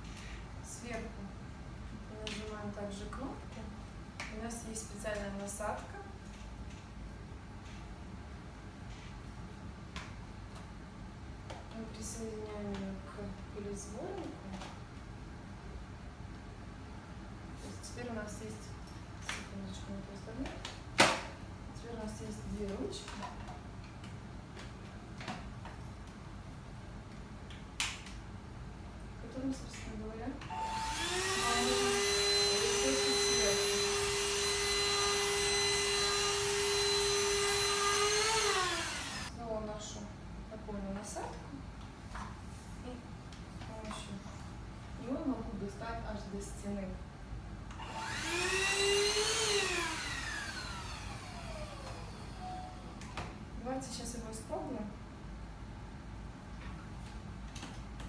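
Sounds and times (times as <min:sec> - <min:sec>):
vacuum motor whine: 0:30.5 - 0:39.3, 0:47.8 - 0:53.2.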